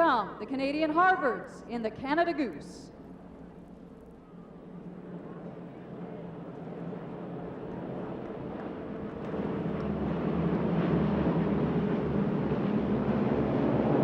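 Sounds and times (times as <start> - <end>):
propeller planes roaring: 3.2 - 14.0.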